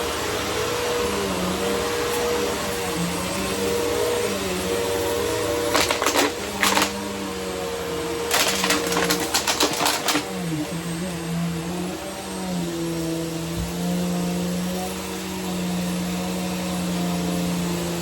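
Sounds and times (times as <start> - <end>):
vacuum cleaner running: 0.0 - 18.0
rattling clicks: 5.7 - 6.9, 8.3 - 10.3.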